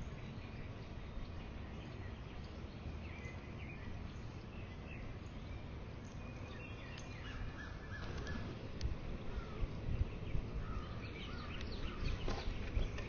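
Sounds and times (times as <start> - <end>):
faint bird chirps: 0.0 - 8.6
wind rumbling on microphone: 0.0 - 13.0.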